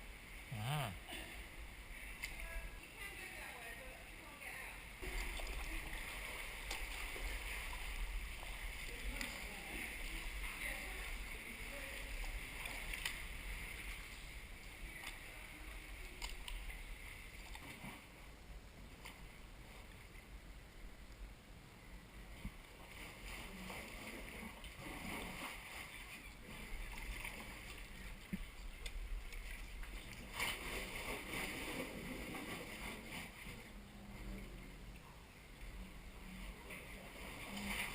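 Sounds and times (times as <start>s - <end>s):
water splashing against hull: 5.0s - 18.2s, 22.4s - 33.8s
paddle strokes: 22.4s - 33.8s.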